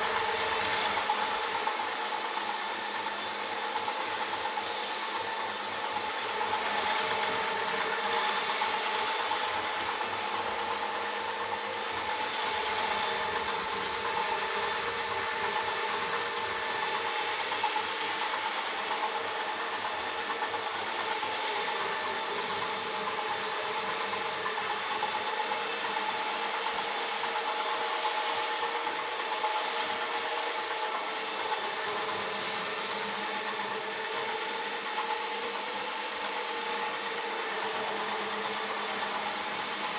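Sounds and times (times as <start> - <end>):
floor polisher motor humming: 0.0 - 39.9.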